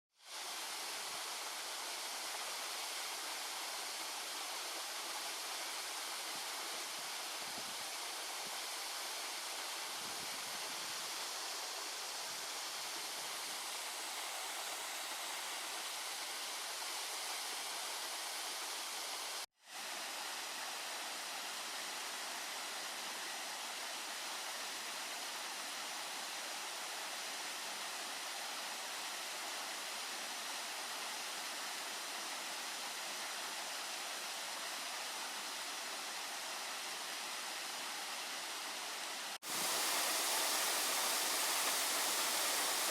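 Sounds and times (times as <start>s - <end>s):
waterfall rushing: 39.4s - 42.9s.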